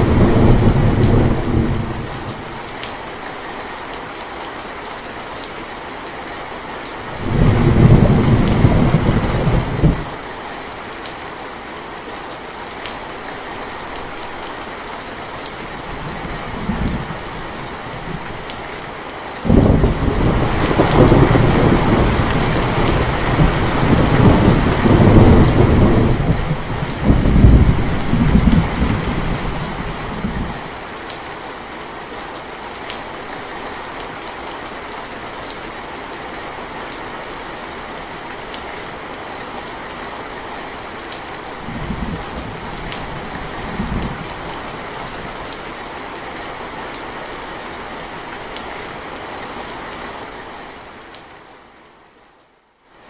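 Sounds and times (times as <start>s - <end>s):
low thunder rumble: 0.0s - 2.2s, 7.2s - 10.1s, 19.5s - 30.6s
steady rain falling: 0.0s - 53.0s.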